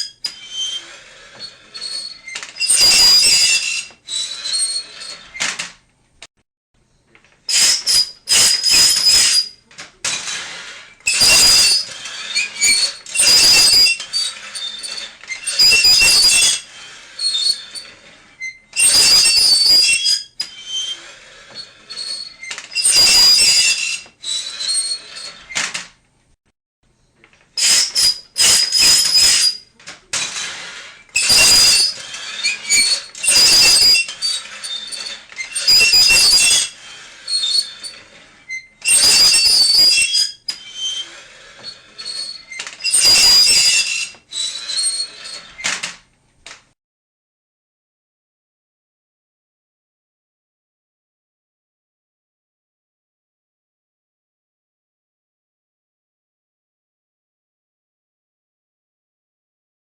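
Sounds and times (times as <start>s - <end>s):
harsh high-pitched squealing scrapes: 0.0s - 5.6s, 7.5s - 25.8s, 27.6s - 45.9s.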